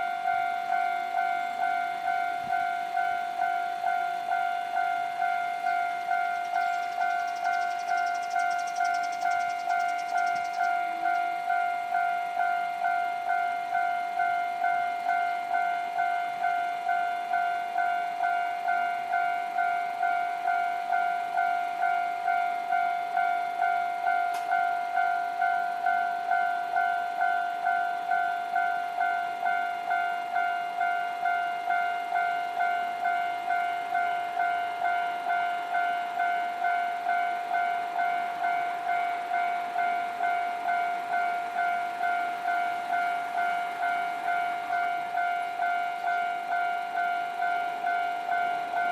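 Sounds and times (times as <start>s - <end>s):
level-crossing warning bell: 0.0s - 48.9s.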